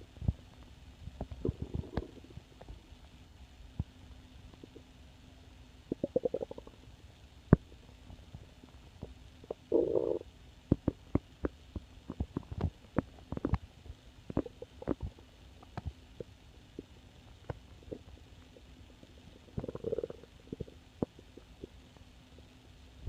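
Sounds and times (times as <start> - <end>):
stomach growling and gurgling: 0.2 - 2.8, 5.9 - 6.8, 7.5 - 13.7, 14.3 - 22.6.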